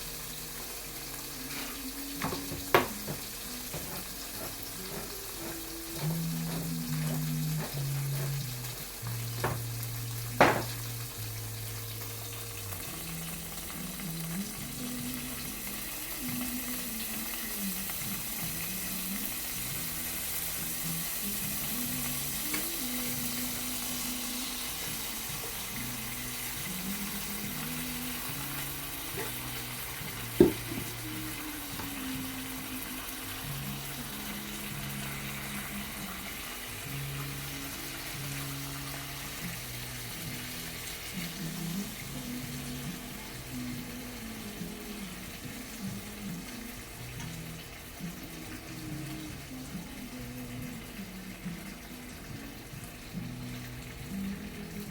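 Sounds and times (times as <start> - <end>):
faint music: 0.0 - 54.9
food sizzling in a frying pan: 0.0 - 54.9
sharp knocks: 10.4 - 10.8.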